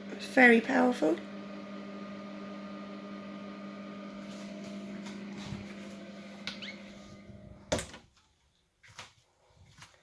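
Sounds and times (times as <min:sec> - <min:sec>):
motor hum: 0:00.0 - 0:07.9.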